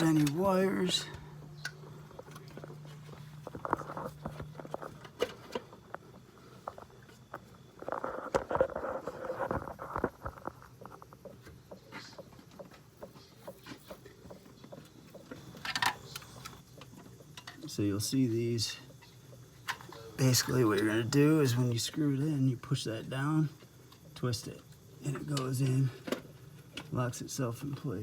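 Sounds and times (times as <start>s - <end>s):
rustling and scraping: 2.1s - 16.6s.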